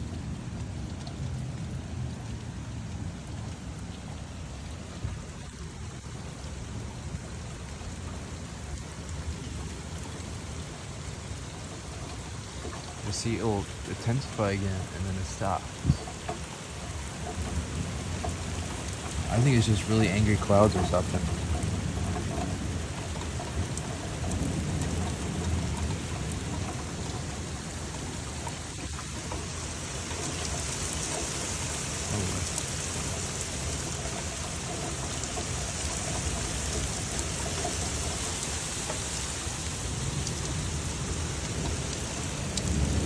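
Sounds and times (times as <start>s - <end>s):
heavy rain: 0.0s - 43.0s
low rumbling thunder: 17.3s - 38.2s, 39.9s - 43.0s.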